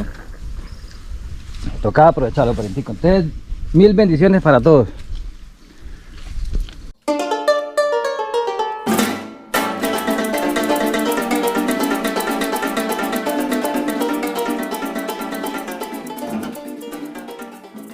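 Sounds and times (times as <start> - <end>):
fast plucked strings music: 7.0 - 17.9.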